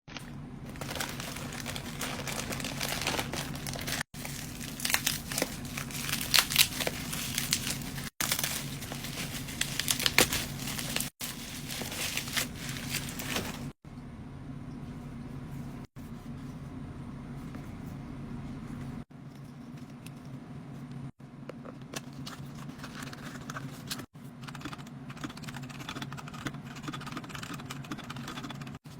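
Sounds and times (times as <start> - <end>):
packaging crinkling and rustling: 0.1 - 13.8.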